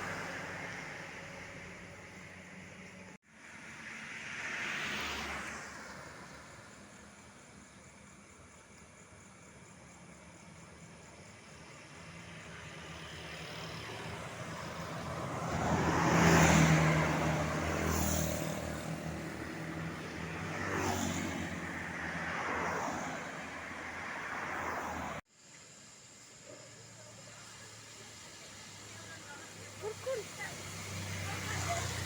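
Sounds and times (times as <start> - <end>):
vehicles passing by: 0.0 - 25.3, 26.4 - 32.0.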